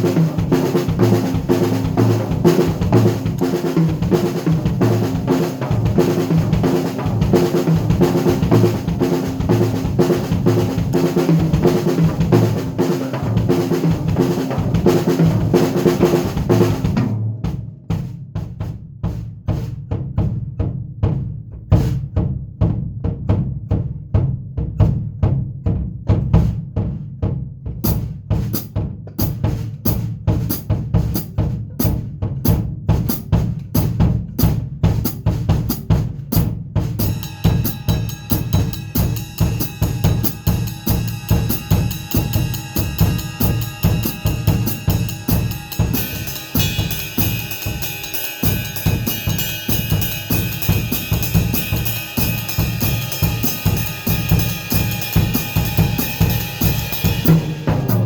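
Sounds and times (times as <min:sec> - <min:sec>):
bass drum and snare groove: 0:00.0 - 0:58.0
cymbals ringing: 0:37.1 - 0:58.0.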